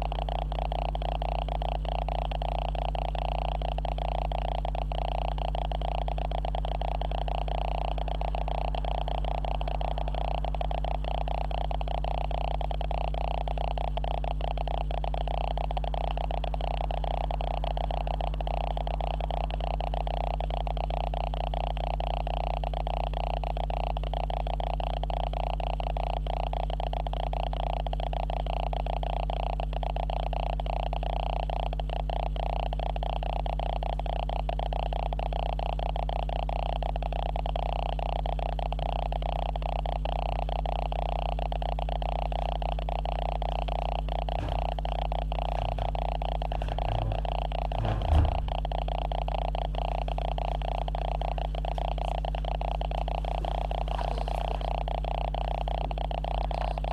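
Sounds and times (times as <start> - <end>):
electronic hum and whine: 0.0 - 56.9
faint low knocks: 44.4 - 48.7.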